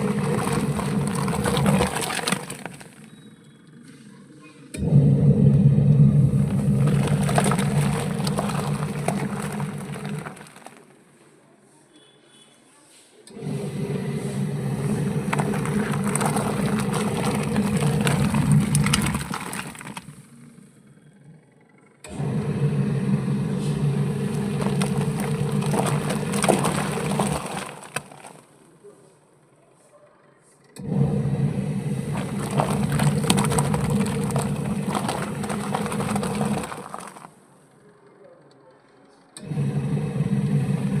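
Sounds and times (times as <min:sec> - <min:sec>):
washing machine motor humming: 0:00.0 - 0:03.1, 0:04.8 - 0:10.8, 0:13.4 - 0:20.2, 0:22.1 - 0:28.5, 0:30.8 - 0:37.3, 0:39.4 - 0:41.0.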